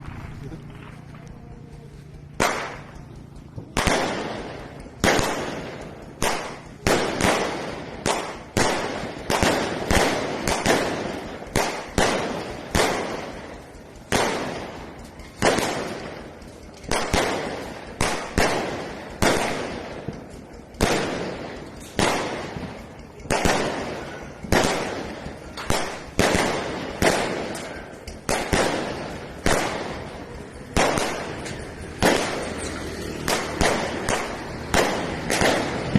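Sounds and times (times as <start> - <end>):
fireworks shells bursting: 2.0 - 35.9.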